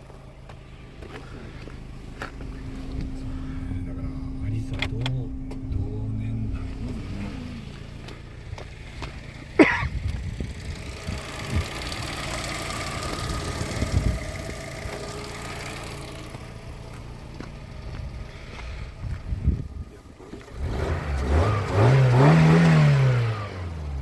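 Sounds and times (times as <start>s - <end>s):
car engine running: 0.0s - 24.0s
car engine starting: 0.0s - 24.0s
rising squeal: 1.9s - 8.8s.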